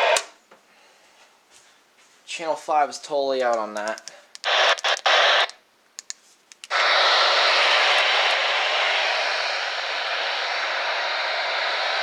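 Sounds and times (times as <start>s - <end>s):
radio static hiss: 0.0s - 0.2s, 3.8s - 5.6s, 6.7s - 12.0s.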